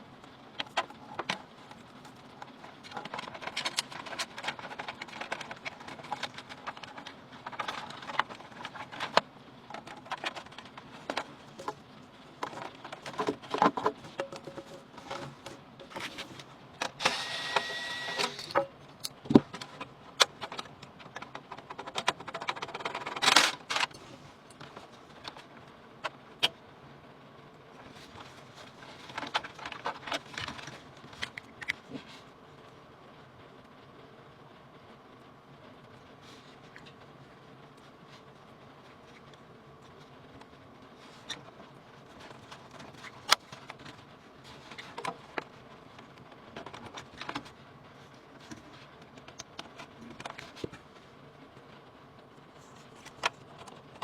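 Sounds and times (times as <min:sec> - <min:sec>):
small clicks and rattles: 0:00.2 - 0:17.0, 0:18.4 - 0:26.2, 0:27.8 - 0:32.2, 0:39.0 - 0:50.9
small hard parts clicking: 0:00.6 - 0:11.8, 0:18.2 - 0:26.2.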